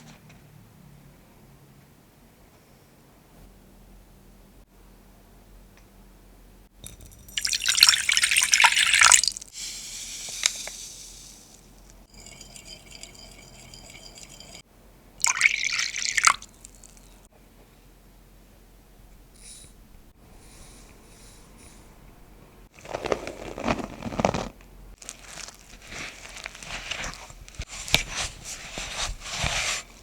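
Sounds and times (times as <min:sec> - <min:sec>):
liquid poured into a bowl: 0:06.8 - 0:14.6, 0:15.2 - 0:17.2.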